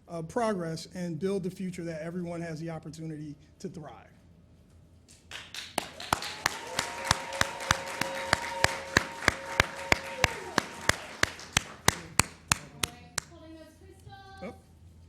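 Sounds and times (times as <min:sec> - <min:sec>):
rhythmic clapping: 0:05.1 - 0:13.4.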